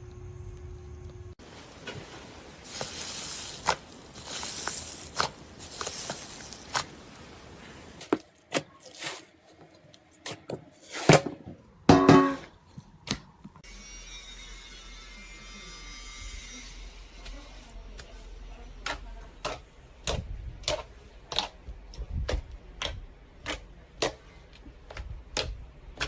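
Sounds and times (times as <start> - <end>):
slime crackly hissing: 2.5 - 7.9.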